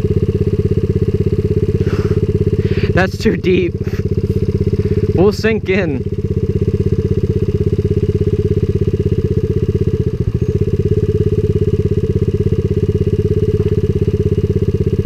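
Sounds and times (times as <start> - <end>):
motorbike engine idling: 0.0 - 15.0.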